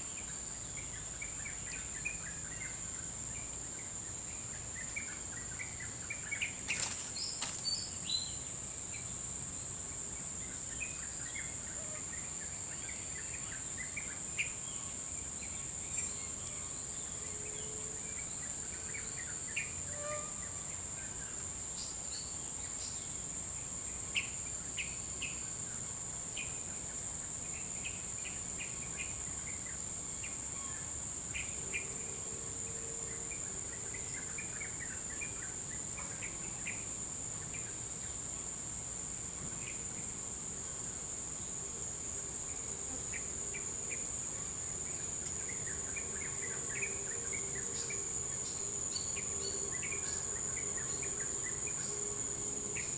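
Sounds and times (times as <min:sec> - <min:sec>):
high-pitched insect buzz: 0:00.0 - 0:09.1, 0:15.4 - 0:23.0, 0:39.6 - 0:52.9.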